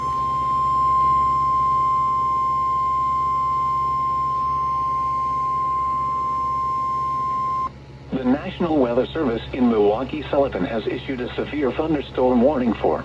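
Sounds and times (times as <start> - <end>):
steady alarm tone: 0.0 - 7.7
faint hum and hiss: 0.0 - 13.0.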